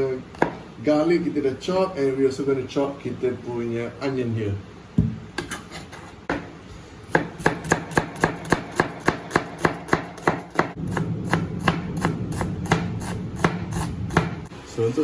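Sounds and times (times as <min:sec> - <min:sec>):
knife chopping onion on board: 0:07.1 - 0:14.5.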